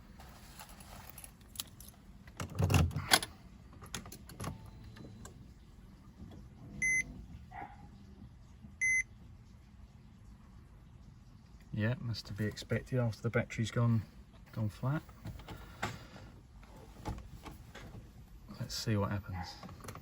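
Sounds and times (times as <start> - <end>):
short electronic warning beeps: 8.8 - 9.1.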